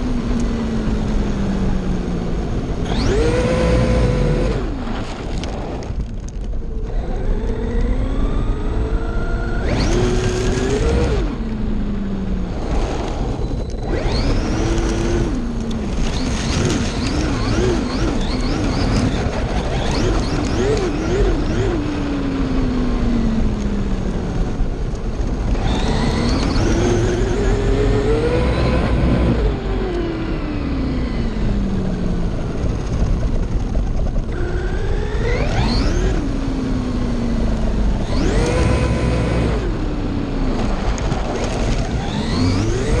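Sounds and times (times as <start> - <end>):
rc car electric motor whining: 2.8 - 4.8, 6.7 - 11.5, 13.4 - 21.8, 25.5 - 31.8, 34.2 - 39.7, 41.9 - 43.0.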